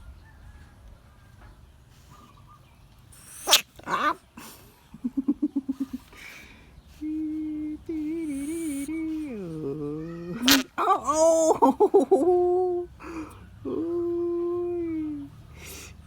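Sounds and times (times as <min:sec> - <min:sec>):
bullfrog calling: 0:03.2 - 0:04.2, 0:10.3 - 0:11.2.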